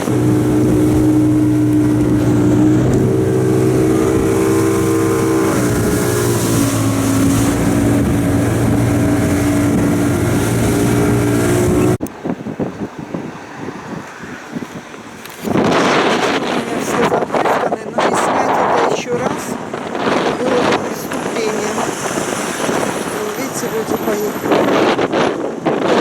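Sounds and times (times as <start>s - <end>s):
motorboat engine droning: 0.0s - 12.1s, 19.5s - 25.8s.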